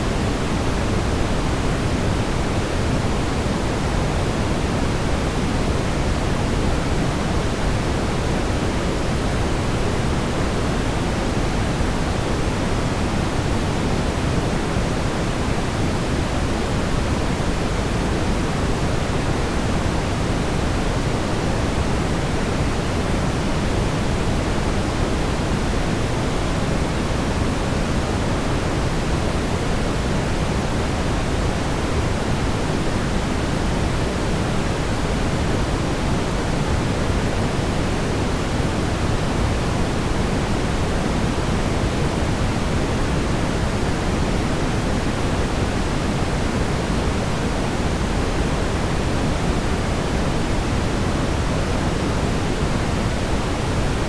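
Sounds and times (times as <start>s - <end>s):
steady brown noise: 0.0s - 54.0s.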